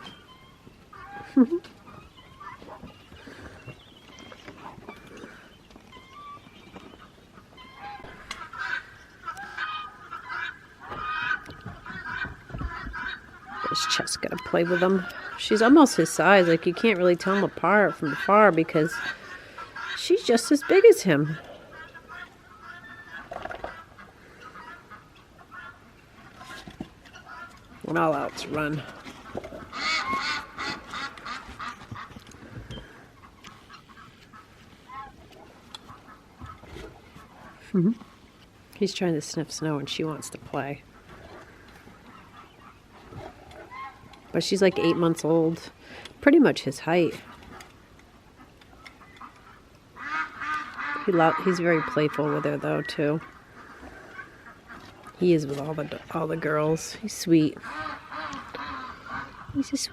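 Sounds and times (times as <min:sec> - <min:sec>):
ducks quacking: 0:07.0 - 0:38.2, 0:48.3 - 0:59.9.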